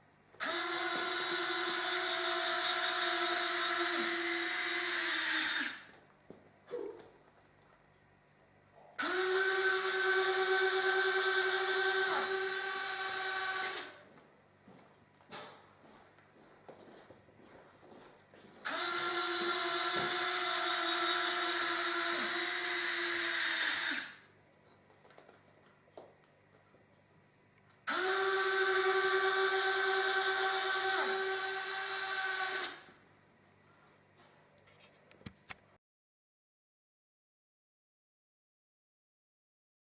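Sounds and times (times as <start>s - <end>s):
small electric motor whining: 0.4s - 5.9s, 9.0s - 14.1s, 18.6s - 24.2s, 27.9s - 32.9s.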